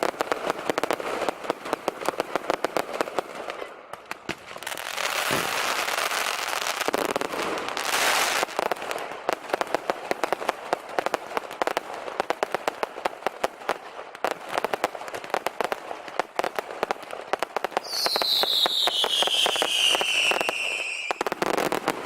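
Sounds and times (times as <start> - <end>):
fireworks crackling bangs: 0.0 - 22.0
falling firework whistle: 5.0 - 6.4, 17.8 - 22.0.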